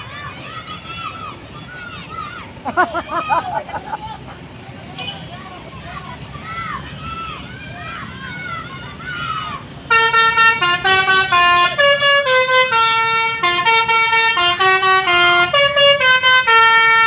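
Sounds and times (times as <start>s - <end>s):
musical air horn tune: 9.9s - 17.0s.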